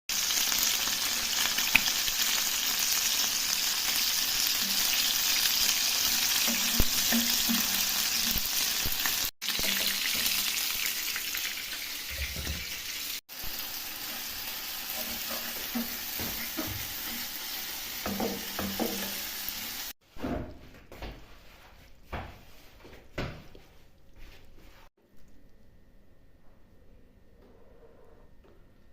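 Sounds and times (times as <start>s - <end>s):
food sizzling in hot oil: 0.1s - 20.0s
utensil scraping a pan: 6.1s - 8.5s, 14.0s - 19.2s.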